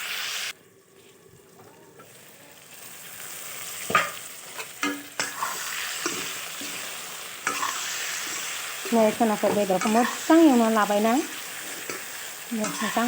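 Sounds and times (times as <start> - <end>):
curry sizzling in a pan: 0.0 - 13.0
spoon scraping a pan: 3.8 - 13.0.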